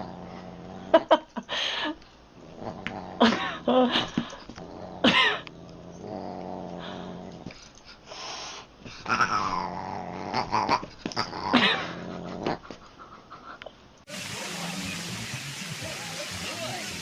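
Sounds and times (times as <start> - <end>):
cat growling: 0.0 - 1.1, 2.4 - 3.8, 4.6 - 7.6, 9.0 - 12.7.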